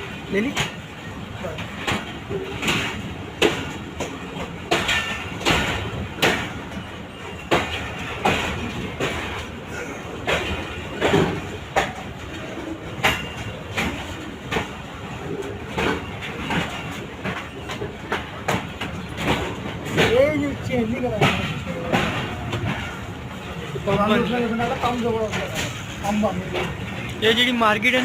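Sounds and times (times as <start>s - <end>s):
train rumbling along track: 0.0s - 28.0s
wheels clacking over rail joints: 0.0s - 28.0s.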